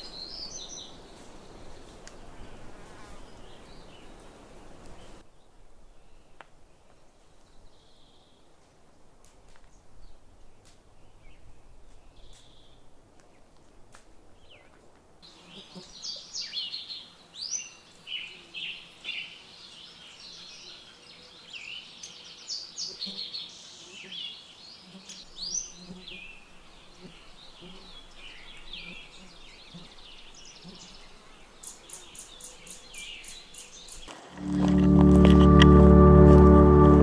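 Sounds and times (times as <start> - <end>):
songbird singing: 0.0 - 2.6, 15.4 - 37.0.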